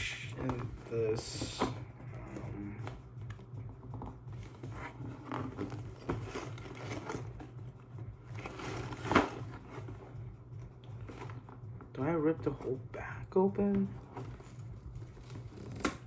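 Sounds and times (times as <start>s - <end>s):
low steady hum: 0.0s - 16.0s
cardboard crinkle: 4.0s - 7.7s, 8.3s - 10.2s, 13.9s - 16.0s.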